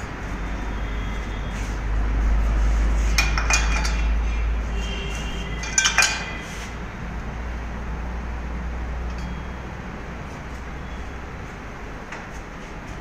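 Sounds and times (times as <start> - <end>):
metal tools clinking: 5.5 - 6.5.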